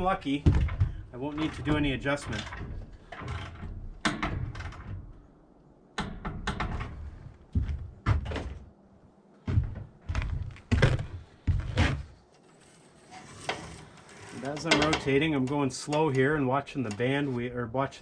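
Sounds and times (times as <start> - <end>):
dull thunks and clunks: 0.0 - 5.2, 6.0 - 8.7, 9.4 - 12.2.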